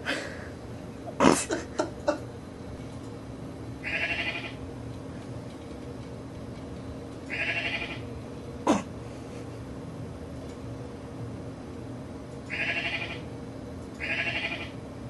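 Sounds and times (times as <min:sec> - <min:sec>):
recorded bleating sound effect: 0:03.8 - 0:04.6, 0:07.3 - 0:08.0, 0:12.5 - 0:13.2, 0:14.0 - 0:14.8.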